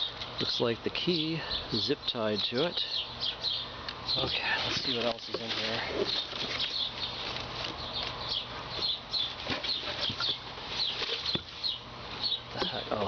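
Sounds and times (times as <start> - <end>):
birds chirping: 0.0 - 13.0
cardboard packaging rustling: 4.6 - 8.2.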